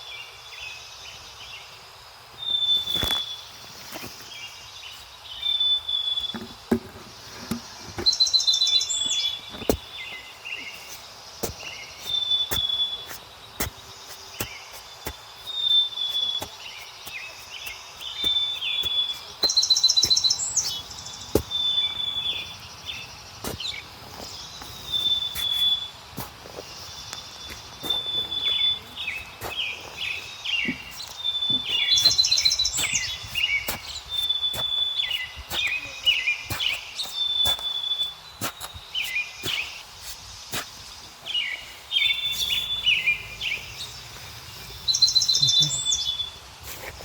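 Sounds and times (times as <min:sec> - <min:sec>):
bird trill: 0:08.0 - 0:14.7, 0:15.4 - 0:39.8, 0:44.7 - 0:46.4.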